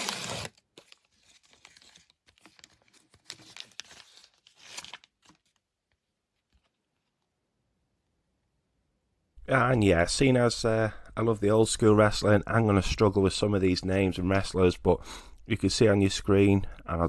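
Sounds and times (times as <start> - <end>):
card pack tearing and crinkling: 0.0 - 5.6.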